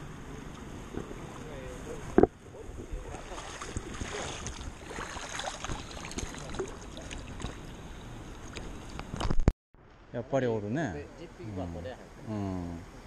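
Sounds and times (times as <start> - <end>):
river current splashing: 0.0 - 9.3.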